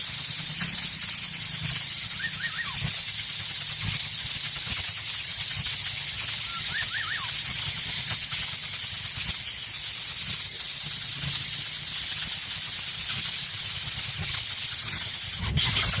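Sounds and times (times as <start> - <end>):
high-pitched hiss: 0.0 - 16.0
whistled notes: 1.6 - 3.1, 6.3 - 7.4.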